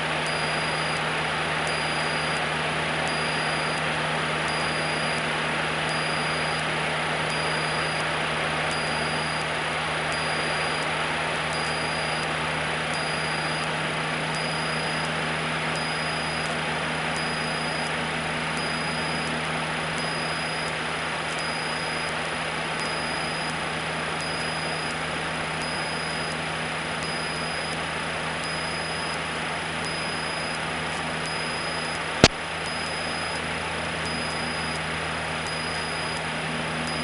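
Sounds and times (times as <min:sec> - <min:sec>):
faint electrical whine: 0:00.0 - 0:13.7, 0:28.4 - 0:34.8
airplane engine drone in cabin: 0:00.0 - 0:37.0
sharp click: 0:32.2 - 0:33.3.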